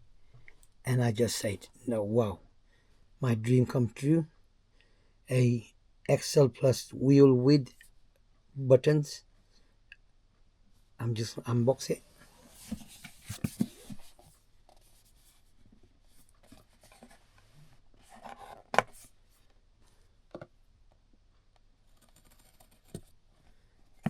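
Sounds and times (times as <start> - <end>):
box rustling and scraping: 12.2 - 15.5, 16.1 - 19.2.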